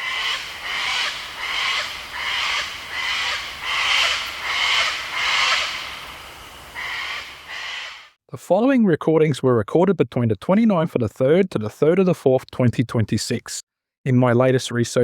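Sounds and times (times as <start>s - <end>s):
harsh raspy call: 0.0s - 6.0s, 6.8s - 8.1s.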